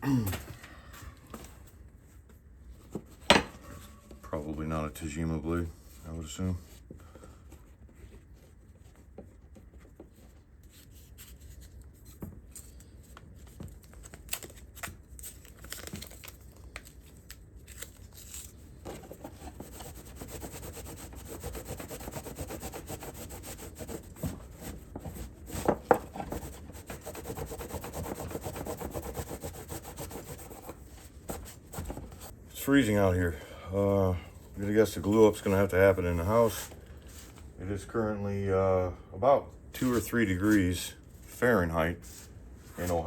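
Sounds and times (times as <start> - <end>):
hand scraping at workbench: 18.9 - 32.4.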